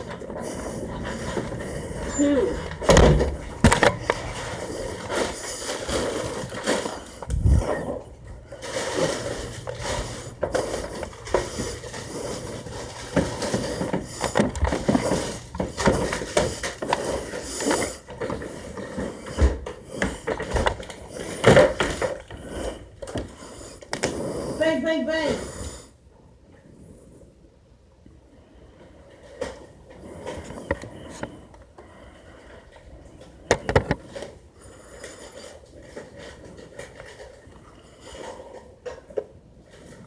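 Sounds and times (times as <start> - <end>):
handling knocks and scrapes: 0.0 - 23.3
loud thumps: 2.6 - 4.6.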